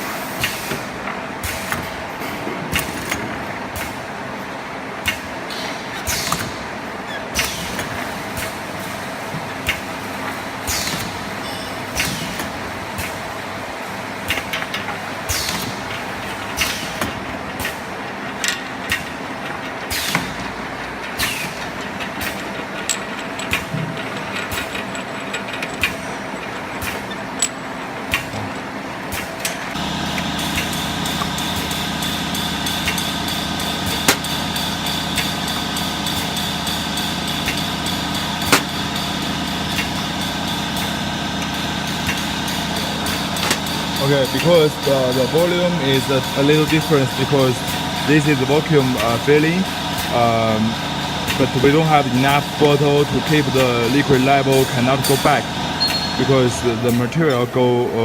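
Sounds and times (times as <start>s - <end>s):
pneumatic air hisses and clicks: 0.0s - 3.2s, 5.0s - 9.0s, 10.6s - 13.3s, 14.3s - 19.1s, 19.9s - 20.5s, 21.2s - 28.3s
machine motor hum: 5.0s - 58.0s.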